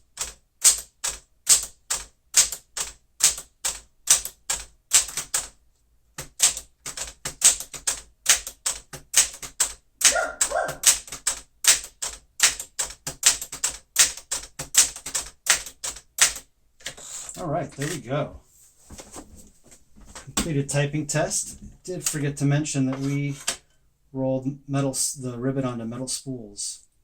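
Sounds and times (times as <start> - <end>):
typewriter keys clacking: 0.0 - 5.6, 6.2 - 18.0.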